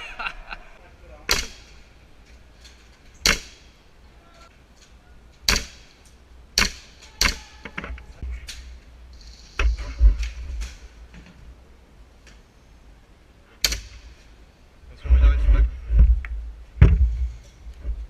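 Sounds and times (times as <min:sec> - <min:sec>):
airsoft gun shots: 0:01.3 - 0:01.8, 0:03.2 - 0:03.7, 0:05.5 - 0:06.0, 0:06.6 - 0:07.5.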